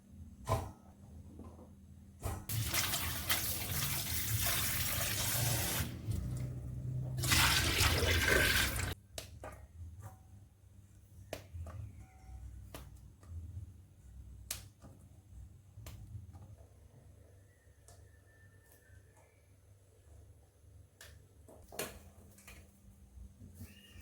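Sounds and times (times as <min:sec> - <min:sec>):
water running from tap into sink: 0:02.5 - 0:06.5, 0:07.2 - 0:09.0.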